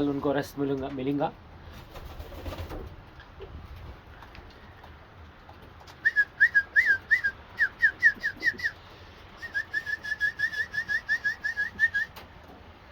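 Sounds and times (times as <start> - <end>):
high whistled notes: 9.4 - 12.1.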